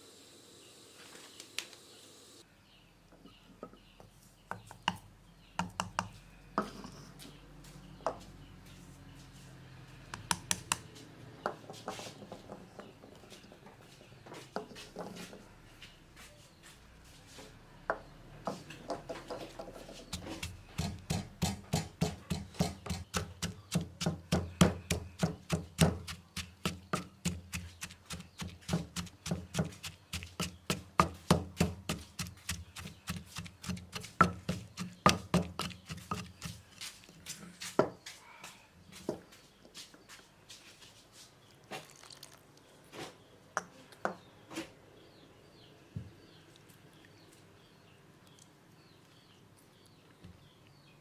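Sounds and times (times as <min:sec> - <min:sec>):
knife chopping on wooden board: 0:20.1 - 0:36.6.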